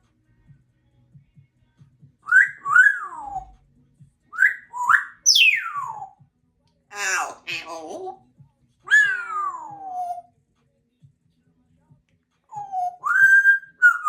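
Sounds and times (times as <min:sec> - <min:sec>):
parrot whistling: 0:02.3 - 0:03.5, 0:04.4 - 0:06.1, 0:06.9 - 0:07.9, 0:08.9 - 0:10.2, 0:12.5 - 0:14.0.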